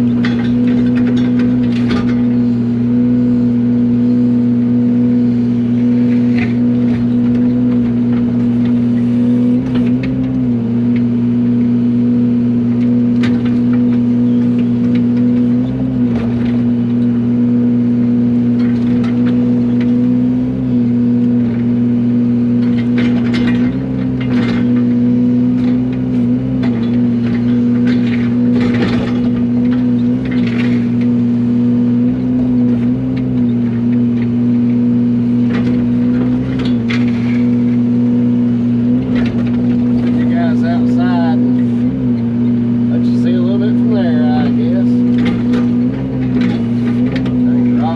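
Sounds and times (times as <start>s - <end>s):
excavator diesel engine running: 0.0s - 47.9s
bucket scraping and clunking soil: 42.9s - 47.9s.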